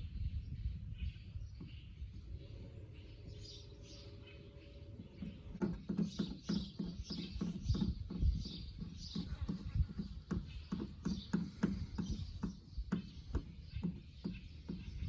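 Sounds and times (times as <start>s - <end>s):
birds chirping: 0.0s - 15.0s
knocks and thuds: 5.2s - 15.0s.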